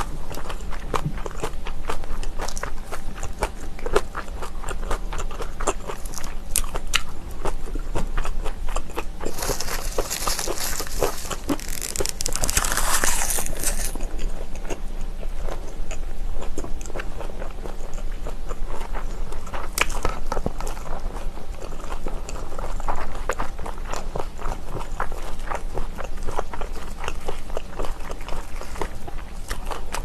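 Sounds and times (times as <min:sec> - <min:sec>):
person chewing crunchy food: 0:00.0 - 0:30.0
crackling rustle: 0:09.2 - 0:14.1.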